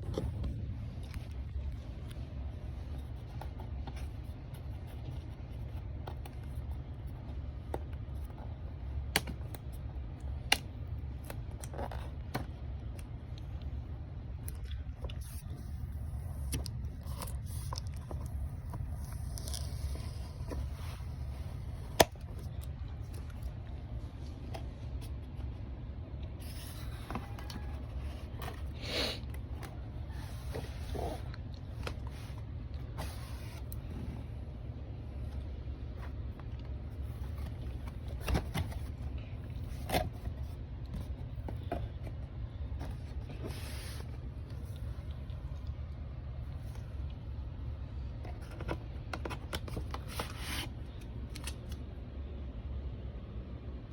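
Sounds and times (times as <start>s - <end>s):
steady low hum: 0.0s - 53.9s
packaging rustling and scraping: 14.9s - 25.6s, 26.3s - 34.5s, 35.1s - 45.4s, 48.2s - 51.8s.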